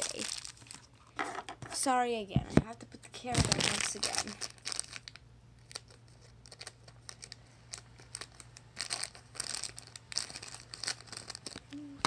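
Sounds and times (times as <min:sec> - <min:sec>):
plastic bag crinkling and tearing: 0:00.0 - 0:00.9, 0:03.2 - 0:11.8
low steady hum: 0:00.0 - 0:12.0.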